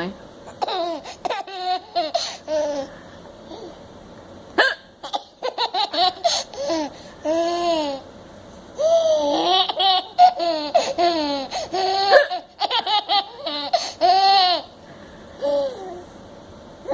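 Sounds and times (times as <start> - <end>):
baby laughing: 0.5 - 2.9, 5.0 - 8.0, 8.8 - 14.8.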